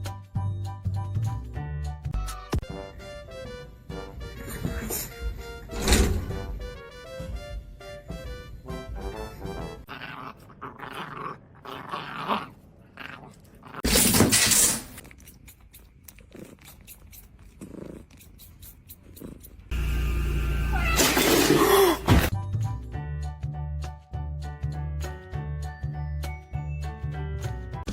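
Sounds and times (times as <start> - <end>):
music: 0.0 - 9.9, 22.3 - 27.9
dog growling: 9.9 - 13.9.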